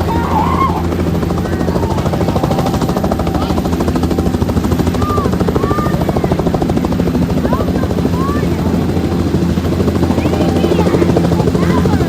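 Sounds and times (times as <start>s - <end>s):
helicopter rotor beating: 0.0s - 12.0s.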